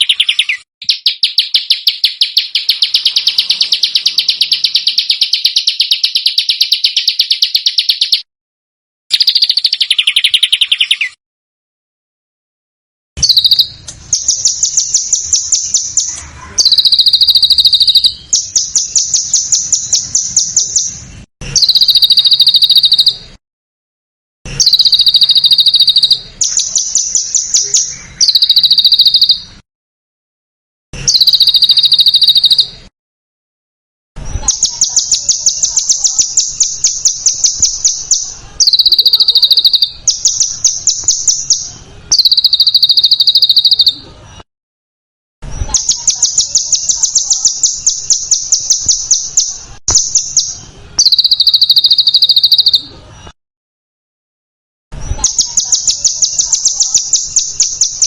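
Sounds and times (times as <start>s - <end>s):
songbird rapid trills: 0.0s - 8.2s, 13.2s - 21.0s, 21.6s - 23.2s, 24.6s - 29.5s, 34.4s - 44.0s, 45.7s - 52.8s.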